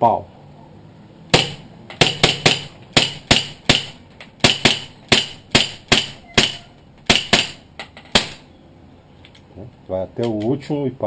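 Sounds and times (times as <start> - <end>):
airsoft pistol shots: 1.3 - 8.4.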